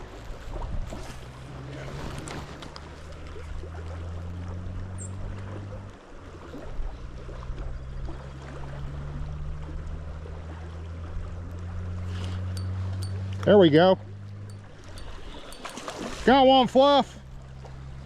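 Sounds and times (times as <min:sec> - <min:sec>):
creek water running: 0:00.0 - 0:18.0
low steady hum: 0:00.0 - 0:18.0.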